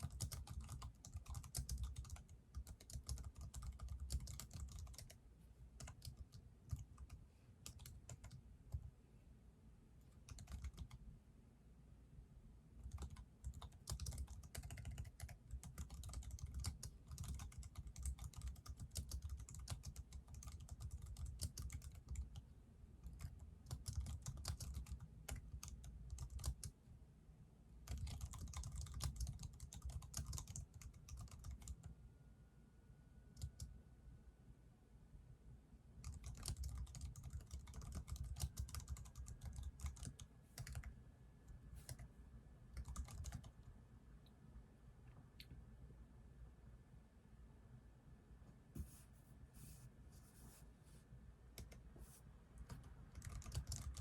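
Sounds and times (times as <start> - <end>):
typing on computer keyboard: 0.0 - 5.2, 5.8 - 8.9, 10.1 - 11.0, 12.8 - 26.8, 27.8 - 31.9, 33.4 - 33.7, 36.0 - 41.0, 42.7 - 43.7, 51.6 - 51.8, 52.6 - 54.0.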